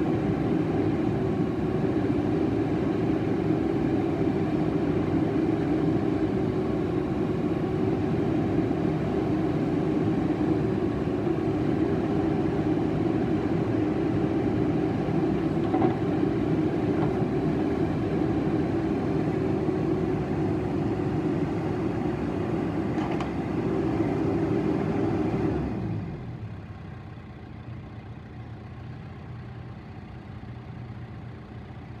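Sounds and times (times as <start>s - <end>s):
diesel engine running: 0.0s - 32.0s.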